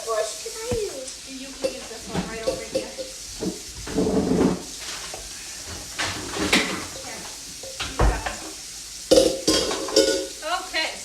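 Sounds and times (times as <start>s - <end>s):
voices: 0.0s - 3.1s, 6.6s - 8.6s, 10.4s - 11.0s
dishes and utensils clattering: 0.0s - 10.4s
steady hiss: 0.0s - 11.0s
heavy thump: 0.7s - 1.1s.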